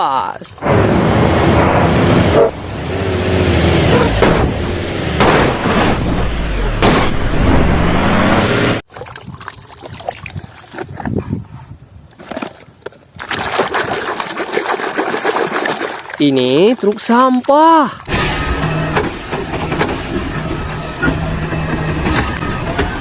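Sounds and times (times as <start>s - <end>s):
water splashing and running: 8.8s - 11.1s, 12.1s - 18.4s.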